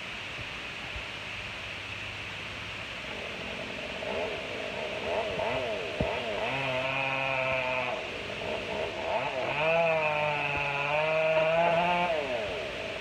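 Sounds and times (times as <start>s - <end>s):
chainsaw engine revving: 3.1s - 13.0s.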